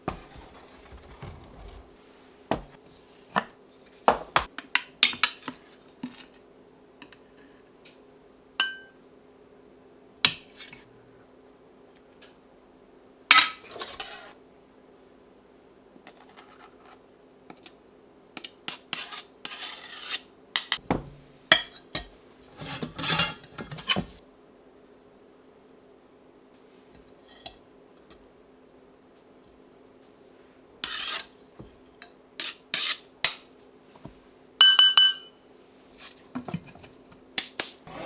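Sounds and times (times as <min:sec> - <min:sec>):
dishes and cutlery clinking: 0:18.4 - 0:24.1, 0:34.6 - 0:35.6.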